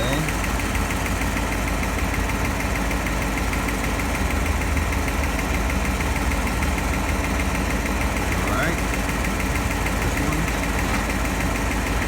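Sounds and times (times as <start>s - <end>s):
car engine idling: 0.0s - 12.0s
air conditioning running: 6.8s - 12.0s.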